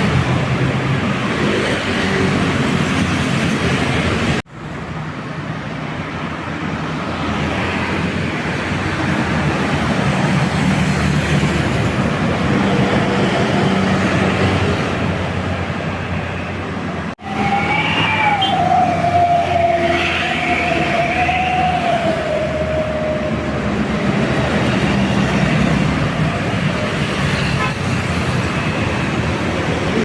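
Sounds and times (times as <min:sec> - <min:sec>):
diesel bus engines passing: 0:00.0 - 0:30.0
heavy road traffic roar: 0:00.0 - 0:30.0.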